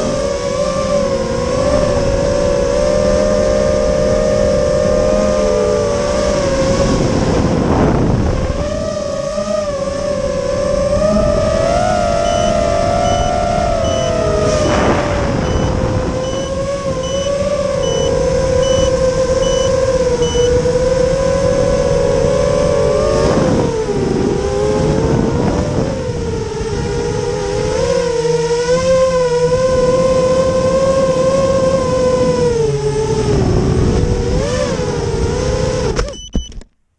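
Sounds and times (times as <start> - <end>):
drone motors and propellers whining: 0.0 - 36.6
high thin beep: 12.2 - 14.2, 15.4 - 20.5
rush of air: 14.3 - 16.2.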